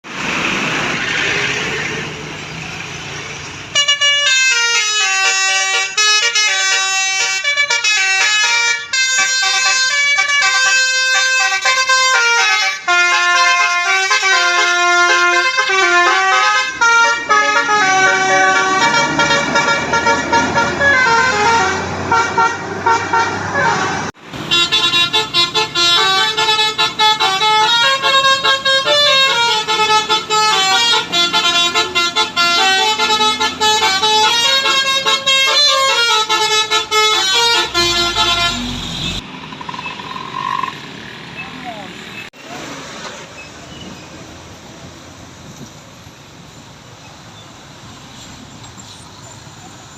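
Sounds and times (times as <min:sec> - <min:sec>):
traffic noise: 0:00.0 - 0:49.9
musical air horn tune: 0:03.8 - 0:39.2.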